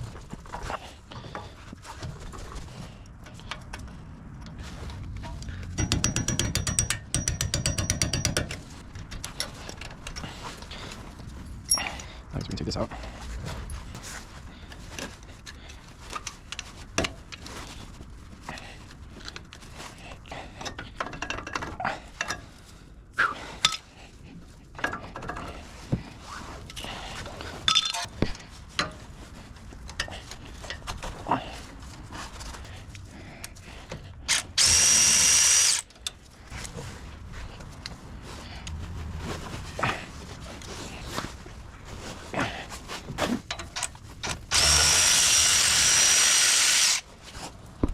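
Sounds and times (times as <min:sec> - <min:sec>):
metal tools clinking: 0:05.3 - 0:10.2, 0:27.6 - 0:28.1, 0:43.4 - 0:44.4
power tool whine: 0:34.3 - 0:35.8, 0:44.5 - 0:47.0.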